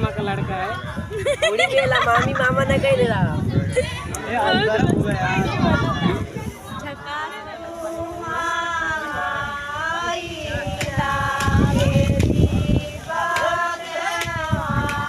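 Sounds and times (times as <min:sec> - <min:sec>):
women singing devotional song: 0:04.4 - 0:15.0.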